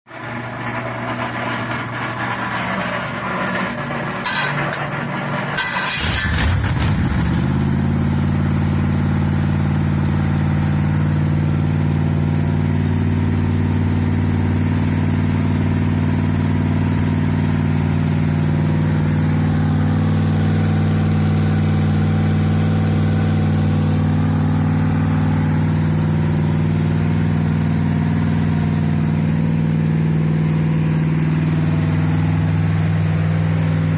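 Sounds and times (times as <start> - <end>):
car engine starting and idling: 0.2 - 33.9.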